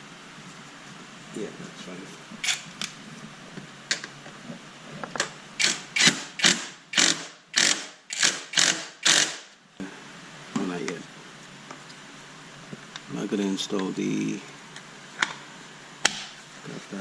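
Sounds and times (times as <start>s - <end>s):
ratchet wrench clicking: 5.6s - 9.4s.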